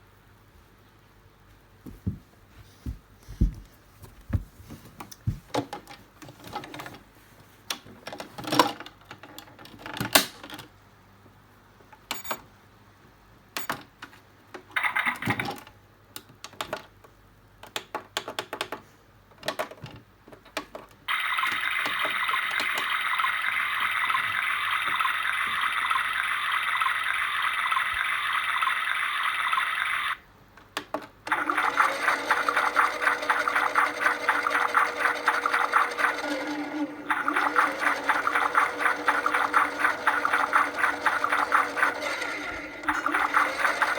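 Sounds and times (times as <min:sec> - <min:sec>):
steady hum: 0:31.3 - 0:43.9
washing machine rushing: 0:31.3 - 0:43.9.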